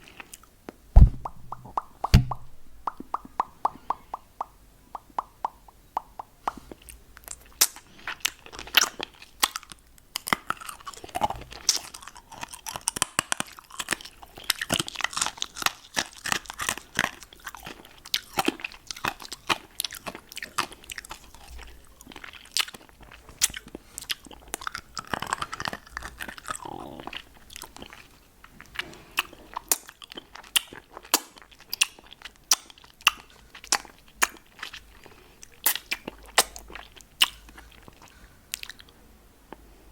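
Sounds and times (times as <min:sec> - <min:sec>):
wet mouth clicks and smacks: 0:00.4 - 0:09.7, 0:35.4 - 0:38.9.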